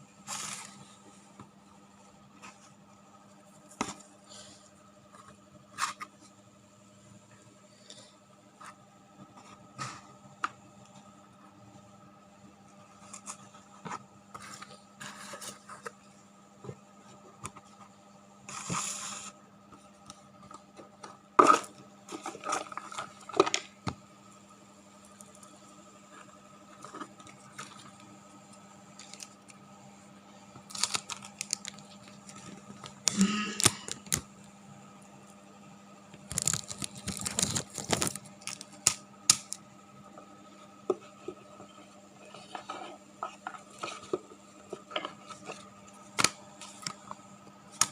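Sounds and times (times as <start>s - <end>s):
faint steady hum: 0.0s - 47.9s
rustling and scraping: 0.2s - 6.4s, 12.7s - 23.8s, 25.5s - 29.6s, 40.5s - 45.8s.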